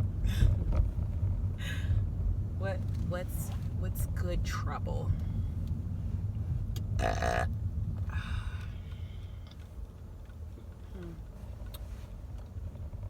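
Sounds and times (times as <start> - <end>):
car cabin rumble: 0.0 - 13.0
woman burping: 7.0 - 7.5.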